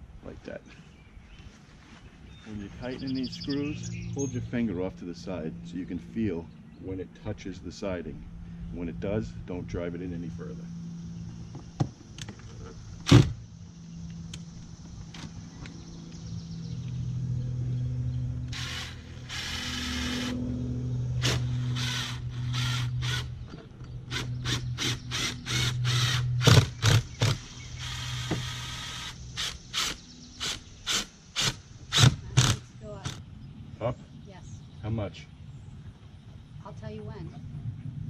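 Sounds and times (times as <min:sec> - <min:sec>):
drill clicking: 0:18.5 - 0:20.4
cordless drill motor: 0:18.5 - 0:20.6, 0:21.2 - 0:23.3, 0:24.1 - 0:33.2.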